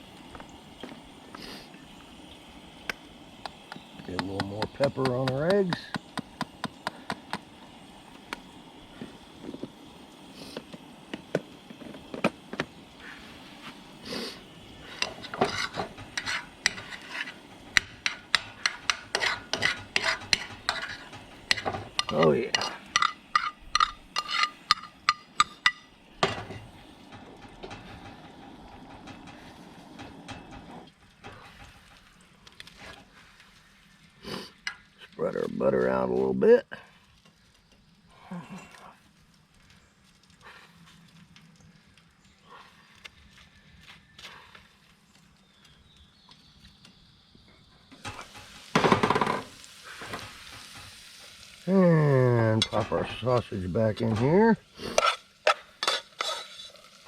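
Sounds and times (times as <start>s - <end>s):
eggs sizzling in frying pan: 0.0s - 57.0s
steady hiss: 0.0s - 57.0s
utensil scraping frying pan: 13.0s - 32.0s, 48.0s - 51.6s, 52.4s - 57.0s.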